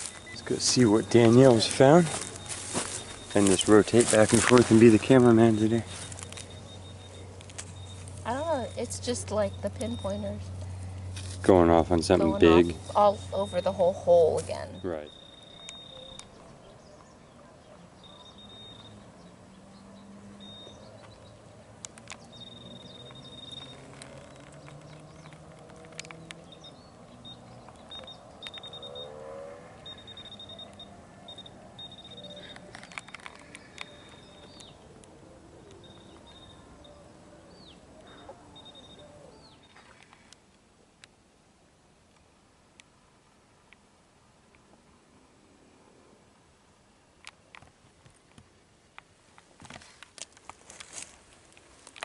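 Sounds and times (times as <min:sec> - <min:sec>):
metal detector high tone: 0:00.0 - 0:10.5, 0:12.1 - 0:16.3, 0:22.3 - 0:24.4, 0:29.8 - 0:34.8
sharp clicks: 0:27.6 - 0:29.1, 0:29.8 - 0:36.4.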